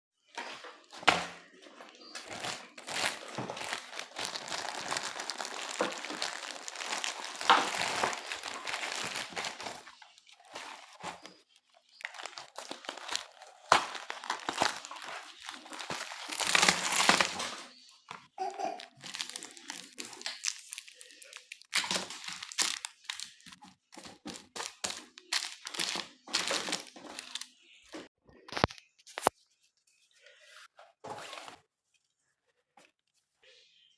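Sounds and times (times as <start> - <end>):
plastic packaging crinkling: 0.4 - 27.8.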